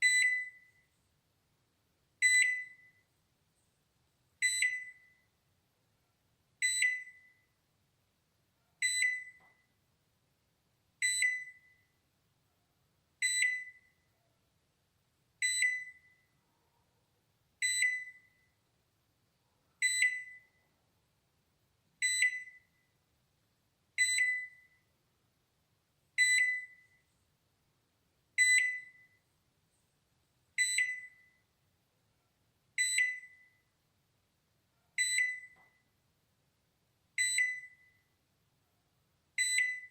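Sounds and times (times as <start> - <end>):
microwave alarm beep: 0.0 - 0.9, 2.2 - 3.1, 4.4 - 5.3, 6.6 - 7.5, 8.8 - 9.7, 11.0 - 11.9, 13.2 - 14.0, 15.4 - 16.3, 17.6 - 18.6, 19.8 - 20.6, 22.0 - 22.9, 24.0 - 24.9, 26.2 - 27.1, 28.4 - 29.2, 30.6 - 31.5, 32.8 - 33.7, 35.0 - 35.9, 37.2 - 38.1, 39.4 - 39.9.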